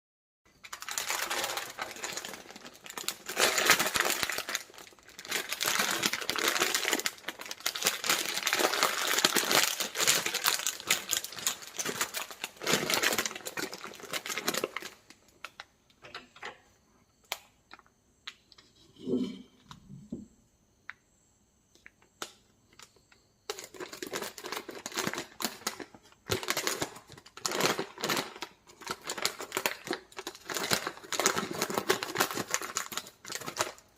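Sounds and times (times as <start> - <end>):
plastic wrappers crinkling: 0.5 - 15.7, 23.5 - 33.9.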